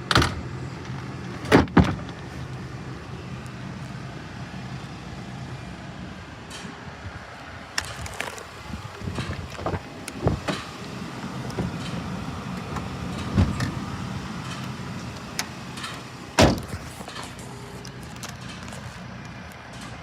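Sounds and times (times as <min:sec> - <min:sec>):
car engine idling: 0:00.0 - 0:20.0
loud clunks: 0:15.8 - 0:17.2.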